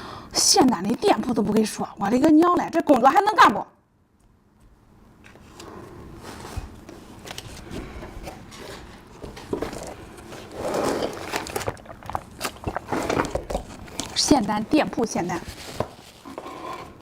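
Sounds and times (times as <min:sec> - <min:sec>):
scraping and clicking handling noises: 0:05.2 - 0:11.8, 0:15.2 - 0:17.0.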